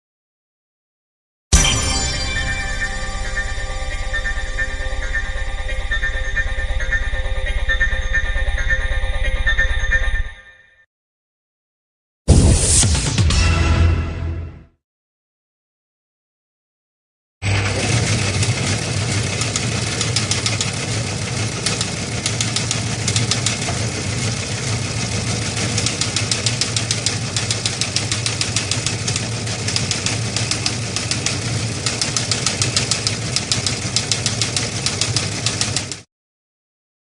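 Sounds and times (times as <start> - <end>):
machine humming with clattering ticks: 17.6 - 36.1.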